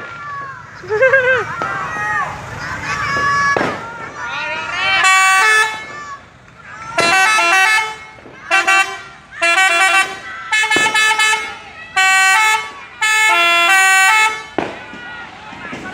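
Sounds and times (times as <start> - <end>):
multi-tone musical horn blasts: 4.9 - 6.0, 7.0 - 14.8.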